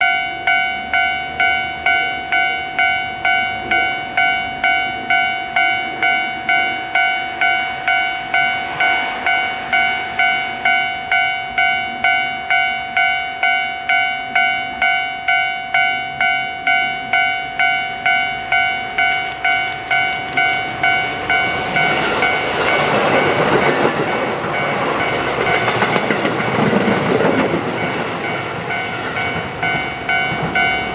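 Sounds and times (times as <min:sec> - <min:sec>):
level crossing bell ringing: 0:09.8 - 0:22.9
train wheels clattering over rail joints: 0:22.9 - 0:30.8.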